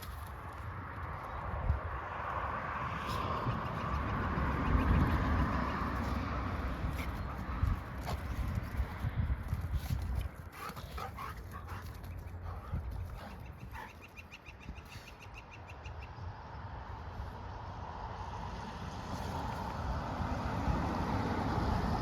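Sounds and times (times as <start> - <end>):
dogs whimpering and yipping: 10.6 - 15.2.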